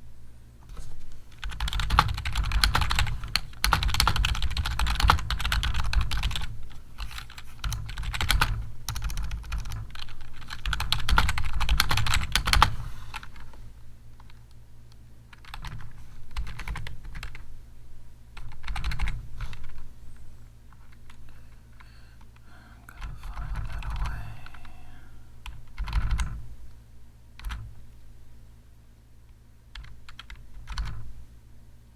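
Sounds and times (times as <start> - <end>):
computer keyboard typing: 1.3 - 13.4, 15.3 - 17.5, 18.4 - 19.8, 22.9 - 26.4, 27.4 - 27.7, 29.7 - 31.0.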